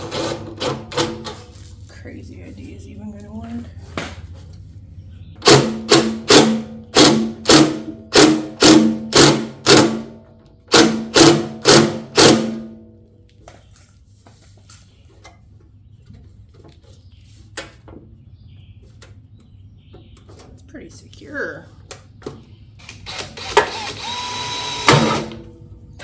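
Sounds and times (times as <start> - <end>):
loud ringing knocks: 5.4 - 12.8.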